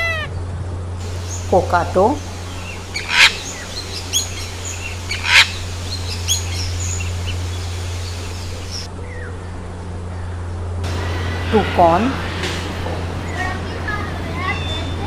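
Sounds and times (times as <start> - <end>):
cockatoo screeching: 0.0 - 0.4, 2.6 - 7.1
steady low hum: 0.0 - 15.0.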